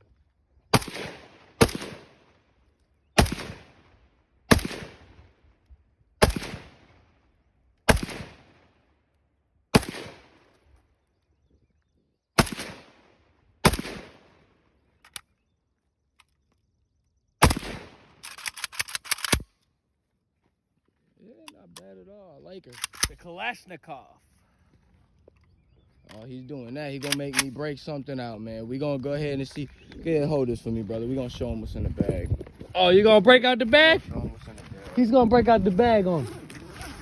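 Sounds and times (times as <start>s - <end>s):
gunshot echo: 0.7s - 2.2s, 3.2s - 3.8s, 4.5s - 5.0s, 6.2s - 6.8s, 7.9s - 8.5s, 9.8s - 10.4s, 12.4s - 13.0s, 13.6s - 14.3s, 17.4s - 18.1s
rifle single shots: 0.7s - 2.3s, 3.2s - 5.3s, 6.2s - 7.1s, 7.8s - 8.8s, 9.7s - 10.6s, 12.4s - 14.6s, 17.4s - 19.5s, 27.0s - 27.6s
rapid rifle fire: 0.8s - 2.1s, 3.2s - 3.7s, 4.5s - 5.0s, 6.2s - 6.8s, 7.9s - 8.5s, 9.8s - 10.4s, 12.4s - 13.0s, 13.6s - 14.2s, 17.4s - 19.4s.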